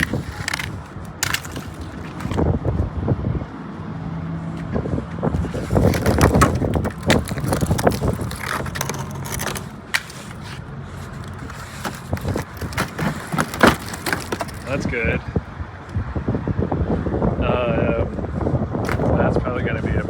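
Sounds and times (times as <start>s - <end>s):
ice crunching and scraping: 0.0s - 2.5s, 5.2s - 15.2s, 18.9s - 19.2s.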